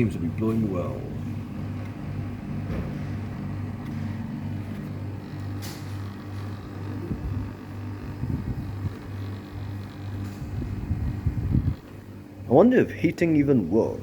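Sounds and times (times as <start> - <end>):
air conditioner humming: 0.0 - 14.0.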